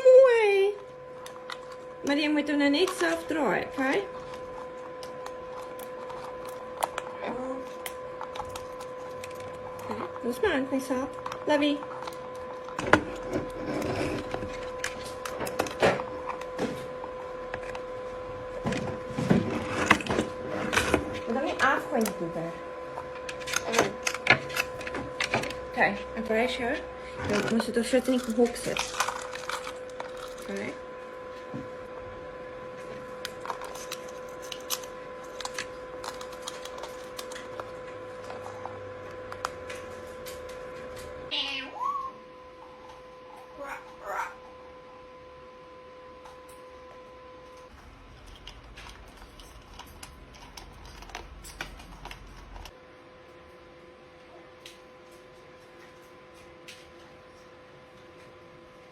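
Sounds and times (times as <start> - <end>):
faint hum: 0.0 - 58.9.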